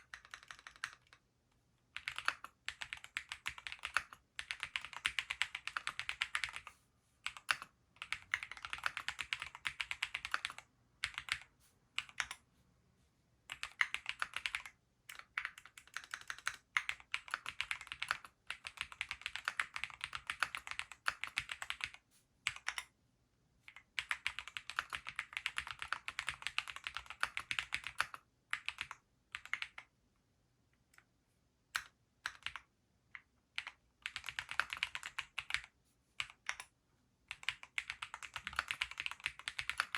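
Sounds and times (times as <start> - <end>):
mechanical keyboard typing: 0.0 - 1.2, 2.0 - 12.4, 13.5 - 22.9, 23.7 - 29.9, 31.8 - 36.7, 37.3 - 39.9.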